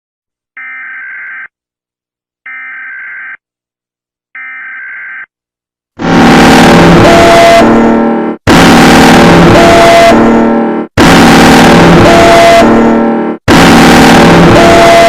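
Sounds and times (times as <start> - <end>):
loud distorted alarm blast: 6.0 - 15.0.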